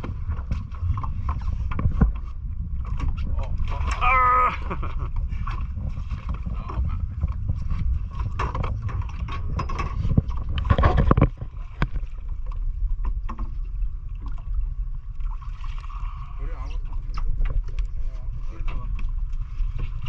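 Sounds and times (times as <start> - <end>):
water around boat: 0.0 - 20.0
wind: 0.0 - 20.0
knocks and clatter on deck: 8.2 - 12.1.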